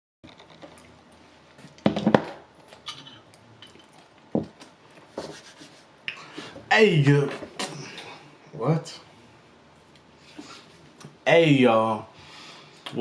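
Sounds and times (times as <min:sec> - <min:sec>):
knocks and clatter of objects: 0:01.6 - 0:04.7.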